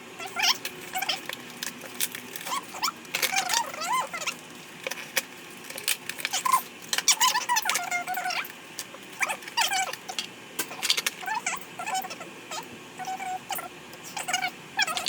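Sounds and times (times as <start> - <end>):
pet animal whining and squeaking: 0.2 - 1.3, 2.4 - 4.4, 6.3 - 8.5, 9.2 - 10.2, 10.8 - 15.0.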